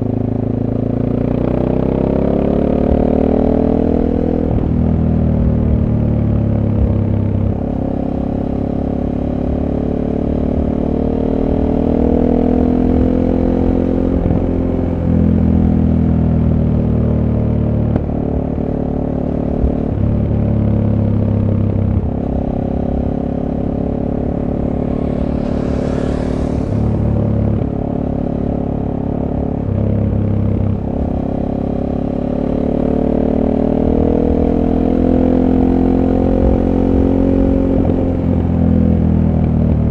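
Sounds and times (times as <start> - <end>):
motorcycle engine revving: 0.0 - 39.8
brief rushing noise: 24.0 - 28.3.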